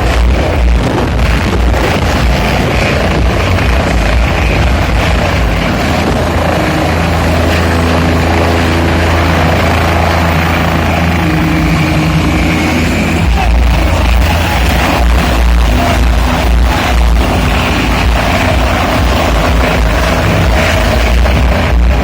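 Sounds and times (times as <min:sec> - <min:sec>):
helicopter rotor and engine: 0:00.0 - 0:22.0.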